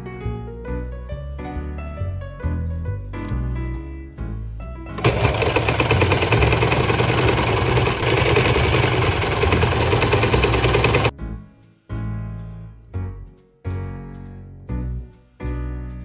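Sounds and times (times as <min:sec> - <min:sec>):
sewing machine rattling: 0:05.0 - 0:11.1.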